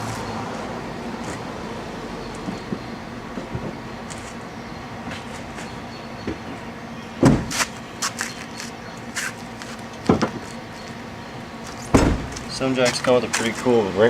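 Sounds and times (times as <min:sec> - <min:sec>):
steady low hum: 0:00.0 - 0:14.0
car jack metal clanks: 0:07.2 - 0:07.8, 0:11.7 - 0:13.5.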